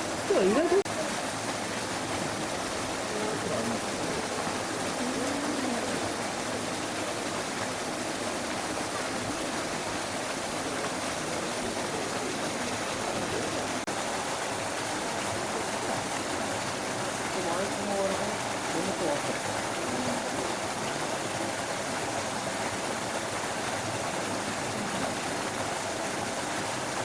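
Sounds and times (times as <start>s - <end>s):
faint voices: 0.0s - 13.9s, 17.3s - 21.2s
running water rushing: 0.0s - 27.0s.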